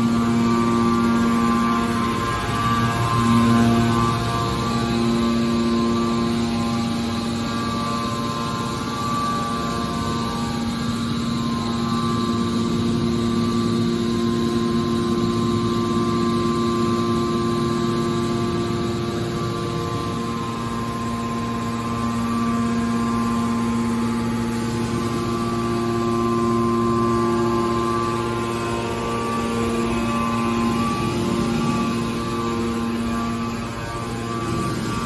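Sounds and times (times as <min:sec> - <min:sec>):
hydraulic machinery humming: 0:18.7 - 0:35.0.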